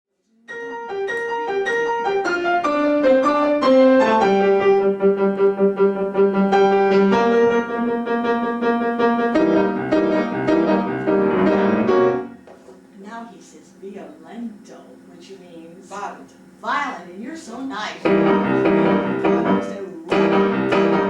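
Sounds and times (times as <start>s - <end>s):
piano playing: 0.5s - 12.5s, 18.0s - 21.0s.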